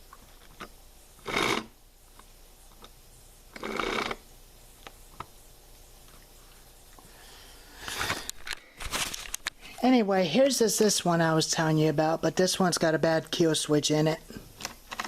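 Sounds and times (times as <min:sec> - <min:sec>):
rustling and clatter: 0:08.0 - 0:09.5.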